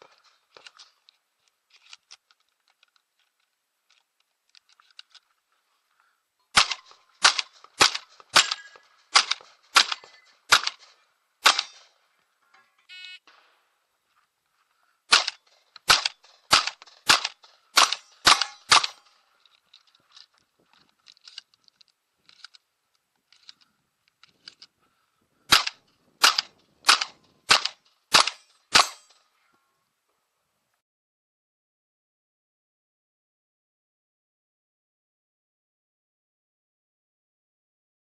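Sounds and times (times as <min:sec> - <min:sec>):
shotgun shots: 0:06.5 - 0:12.0, 0:15.1 - 0:19.2, 0:25.5 - 0:29.1.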